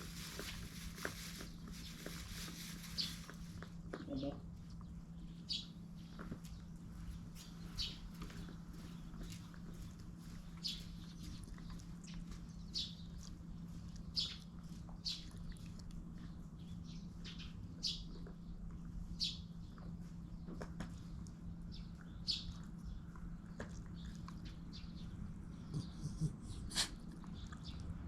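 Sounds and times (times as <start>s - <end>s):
steady low hum: 0.0s - 28.0s
small bird chirping: 4.0s - 21.1s, 21.7s - 26.3s.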